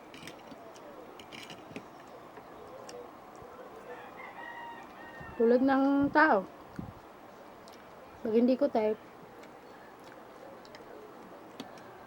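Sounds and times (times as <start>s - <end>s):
chewing and eating: 7.6s - 8.0s, 9.3s - 12.0s.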